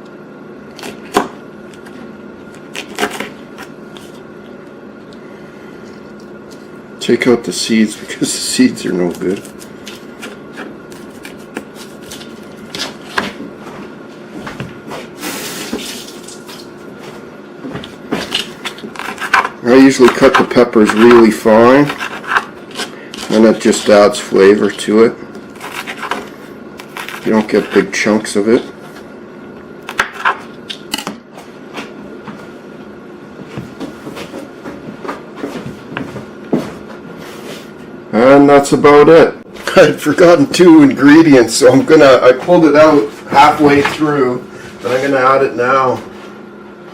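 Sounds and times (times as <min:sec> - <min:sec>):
steady low hum: 0:00.0 - 0:46.9
knife on cutting board: 0:18.2 - 0:21.2, 0:21.8 - 0:23.5, 0:29.9 - 0:30.5.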